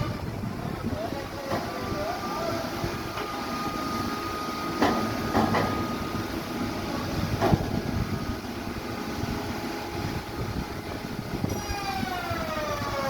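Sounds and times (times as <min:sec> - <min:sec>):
heavy machinery running: 0:00.0 - 0:13.0.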